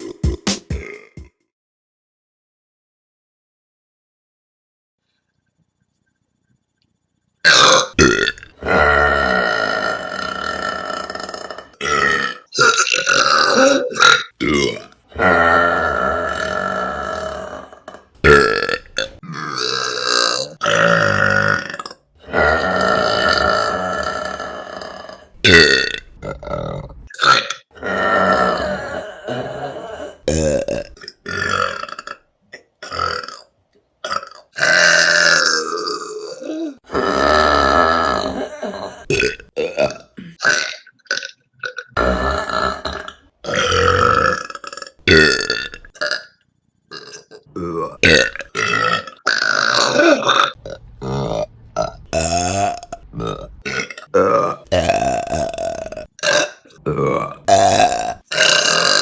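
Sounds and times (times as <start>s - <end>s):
women burping: 22.3s - 26.0s, 27.2s - 30.9s, 36.2s - 40.7s, 47.6s - 50.6s.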